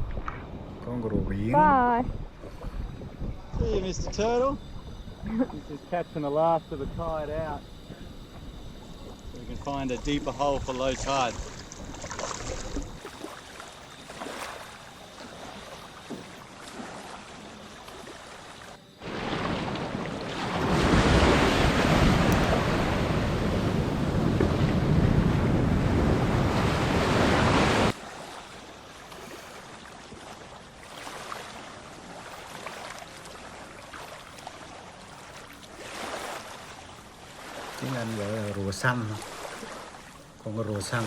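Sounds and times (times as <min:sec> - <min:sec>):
wind on microphone: 0:00.0 - 0:05.9, 0:19.1 - 0:27.9
sea waves washing over reef: 0:18.0 - 0:41.0.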